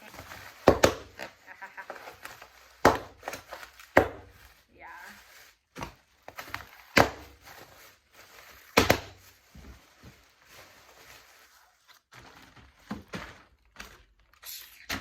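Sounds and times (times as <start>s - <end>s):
rustling: 0.0s - 14.4s.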